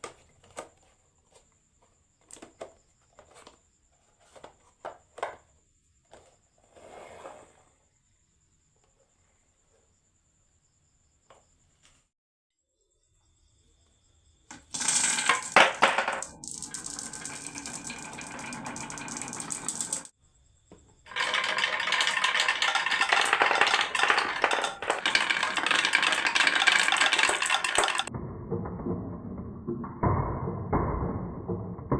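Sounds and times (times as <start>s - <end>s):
marbles rattling on wooden run: 14.5s - 20.1s, 21.1s - 28.1s.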